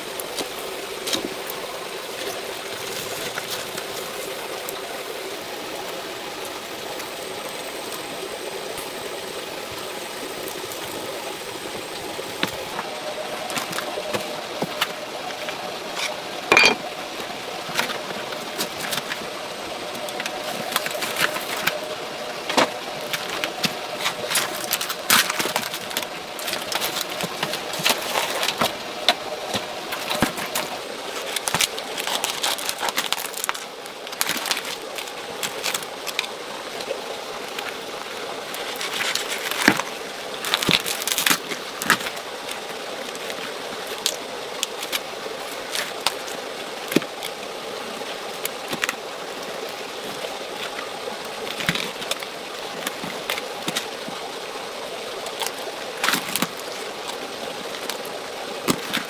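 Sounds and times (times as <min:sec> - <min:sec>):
hands clicking and scraping materials: 0:12.4 - 0:47.4, 0:48.1 - 0:54.3, 0:55.2 - 0:59.0.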